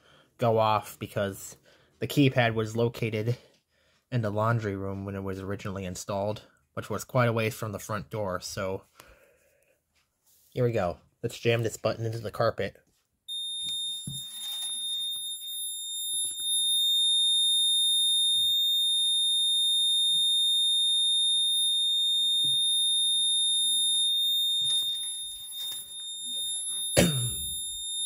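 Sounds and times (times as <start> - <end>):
loud high-pitched alarm beeper tone: 16.2 - 28.0.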